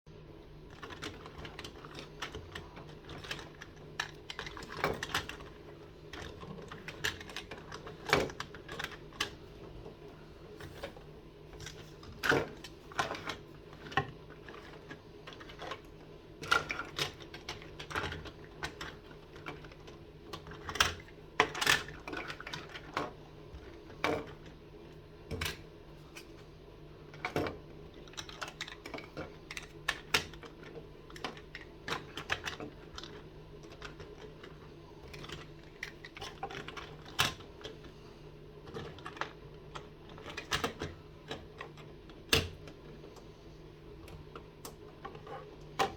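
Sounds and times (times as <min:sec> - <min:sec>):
small toys clicking and knocking: 0:00.7 - 0:09.4, 0:11.6 - 0:24.5, 0:27.2 - 0:37.8, 0:38.6 - 0:42.8.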